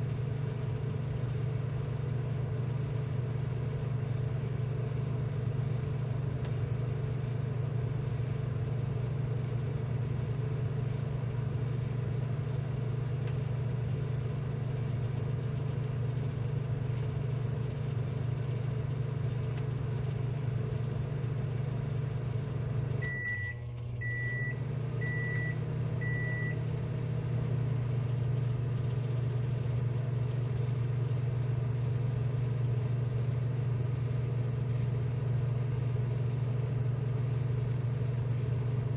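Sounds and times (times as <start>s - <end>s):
rework station fans humming: 0.0s - 38.9s.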